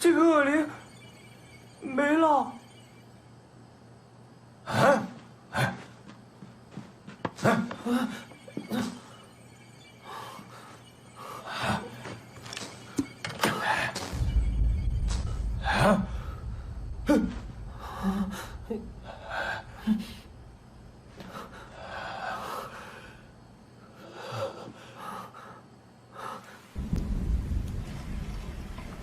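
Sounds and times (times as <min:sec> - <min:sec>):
low rumble: 0:14.0 - 0:21.1, 0:26.8 - 0:29.0.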